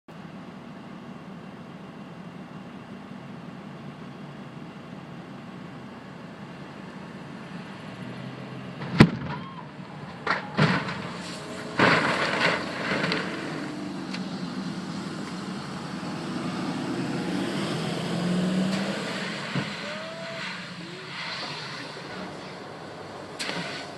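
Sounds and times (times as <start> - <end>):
low vehicle hum: 0.1 - 23.9
loud sharp bangs: 8.8 - 13.7, 18.7 - 22.4
car crashing: 8.8 - 14.3, 18.5 - 23.9.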